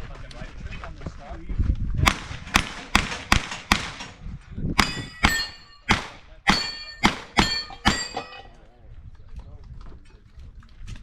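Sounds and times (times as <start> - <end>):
pistol shots: 2.1 - 4.2, 4.8 - 8.2
steel targets ringing: 4.8 - 8.6.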